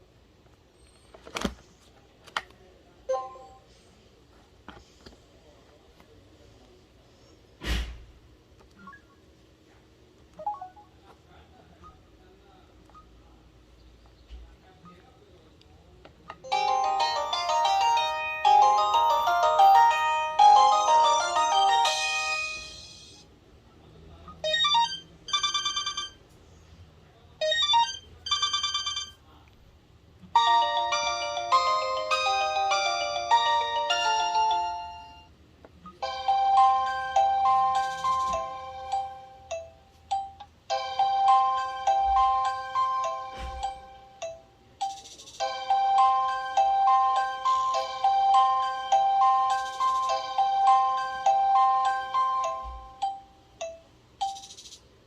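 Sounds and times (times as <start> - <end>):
phone handling noise: 1.2 - 1.6
busy ringtone melody: 3.1 - 3.7, 10.4 - 11.0, 16.4 - 23.2, 24.3 - 26.2, 27.4 - 29.2, 30.4 - 35.3, 35.9 - 54.6
phone ringtone notes and chord: 16.5 - 23.2, 30.4 - 35.3, 36.0 - 54.5.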